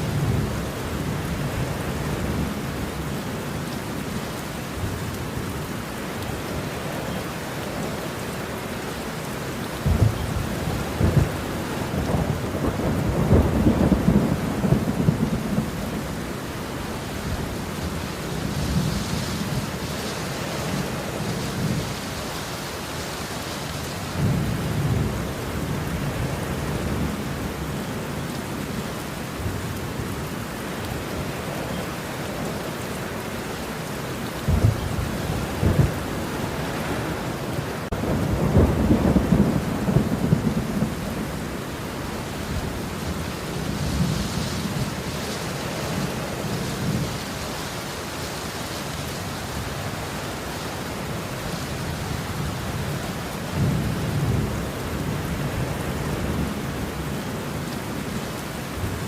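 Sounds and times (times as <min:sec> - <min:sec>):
steady rain: 0:00.0 - 0:59.0
rolling thunder: 0:09.8 - 0:16.2, 0:34.4 - 0:37.2, 0:37.8 - 0:41.5.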